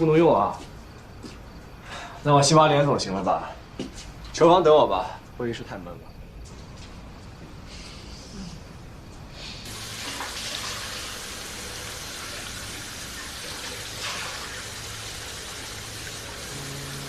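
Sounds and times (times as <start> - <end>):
tap water running into sink: 9.7 - 17.0.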